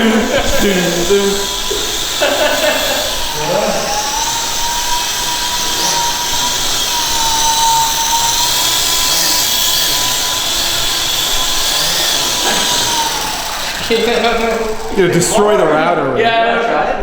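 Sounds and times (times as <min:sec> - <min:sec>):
rc helicopter motor whining: 0:00.0 - 0:16.3.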